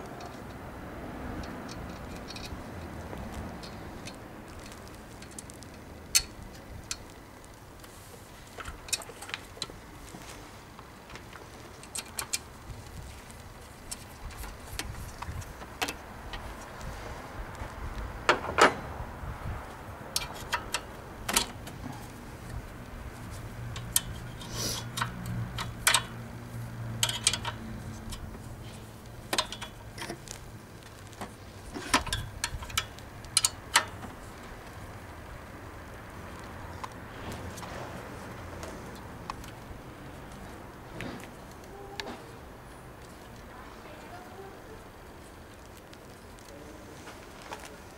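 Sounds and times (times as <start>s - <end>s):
wrenches clinking against metal: 27.0s - 28.2s.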